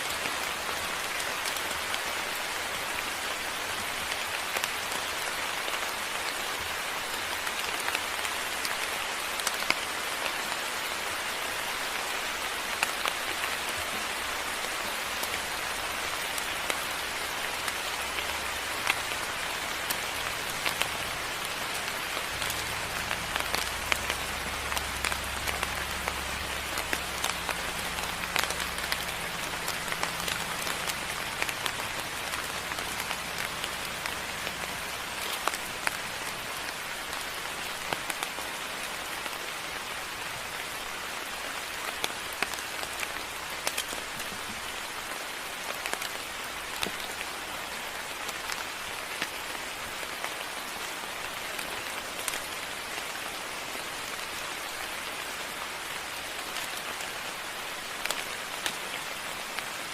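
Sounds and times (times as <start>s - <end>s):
moderate rain falling: 0.0s - 59.9s
low steady hum: 18.0s - 36.4s.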